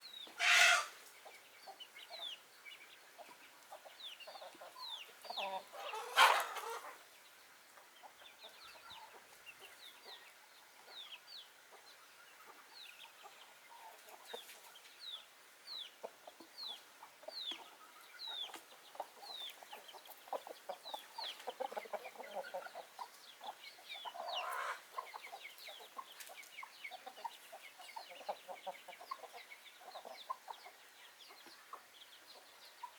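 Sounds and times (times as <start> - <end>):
chickens clucking: 0.2 - 32.9
loud brief chicken calls: 0.4 - 1.0.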